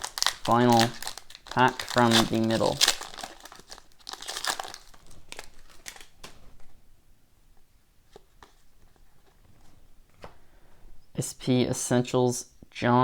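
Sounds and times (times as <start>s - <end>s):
wrapper tearing and crinkling: 0.0s - 6.7s.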